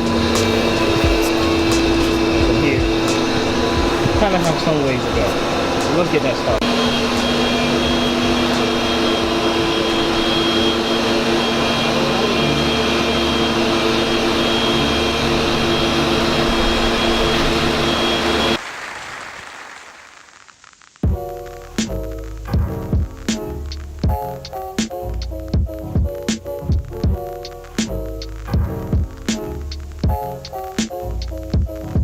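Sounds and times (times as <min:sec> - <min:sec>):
background music: 0:00.0 - 0:06.6, 0:21.0 - 0:32.0
machine whooshing and whining: 0:00.0 - 0:18.6.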